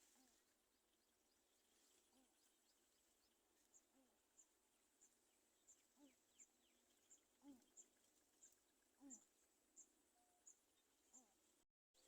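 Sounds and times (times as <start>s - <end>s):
low animal calls: 7.4s - 7.9s, 9.0s - 9.4s.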